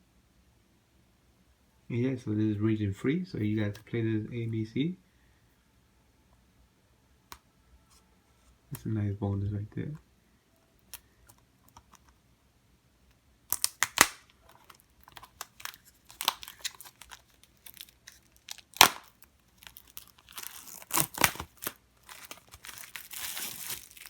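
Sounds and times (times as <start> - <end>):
plastic wrapping crinkling: 13.5 - 24.0.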